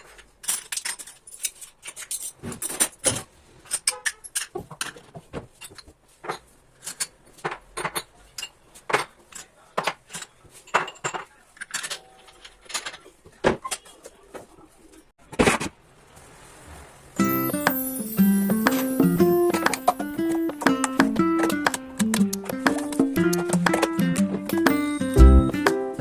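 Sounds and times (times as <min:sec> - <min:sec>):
cutlery and crockery clinking: 0:00.4 - 0:13.0, 0:17.2 - 0:21.8.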